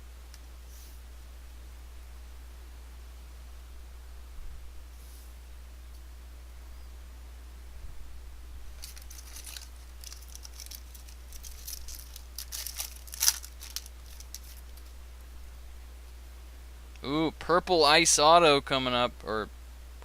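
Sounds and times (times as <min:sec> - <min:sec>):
foil wrapper tearing and crinkling: 0:08.8 - 0:14.9.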